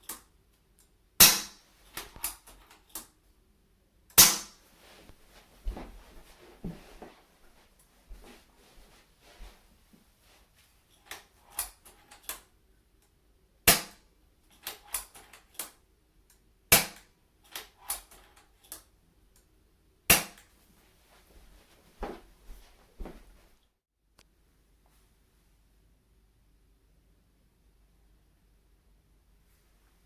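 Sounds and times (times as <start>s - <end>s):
suppressed air rifle shots: 1.2s - 1.6s, 4.2s - 4.6s.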